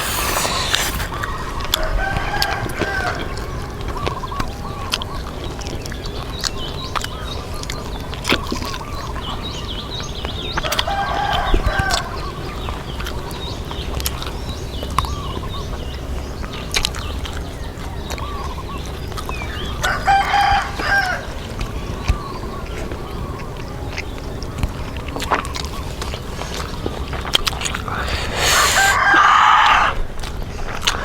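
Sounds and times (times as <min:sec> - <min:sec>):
short pitched animal calls: 0:27.9 - 0:29.3.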